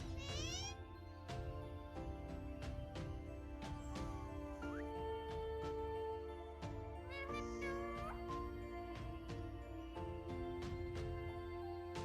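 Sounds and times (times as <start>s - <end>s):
background music with steady beat: 0.0s - 12.0s.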